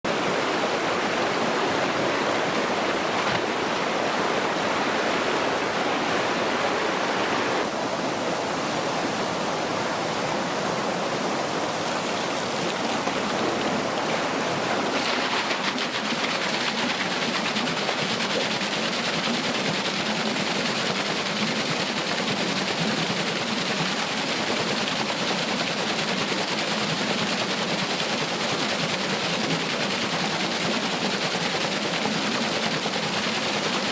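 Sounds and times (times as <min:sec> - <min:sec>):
water pouring onto water wheel: 0:12.0 - 0:33.9.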